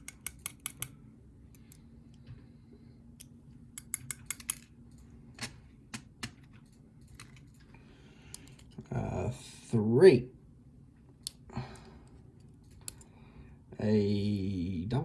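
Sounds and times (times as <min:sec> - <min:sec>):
metallic clicks of lock pins: 0:00.0 - 0:02.2, 0:03.2 - 0:05.1, 0:06.4 - 0:08.8, 0:12.4 - 0:13.1.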